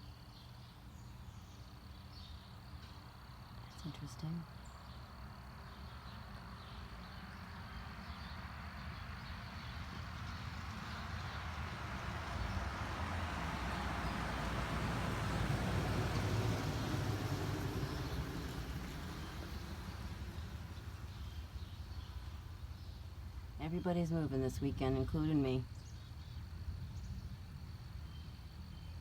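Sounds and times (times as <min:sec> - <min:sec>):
vehicle engine rumble: 0:00.0 - 0:29.0.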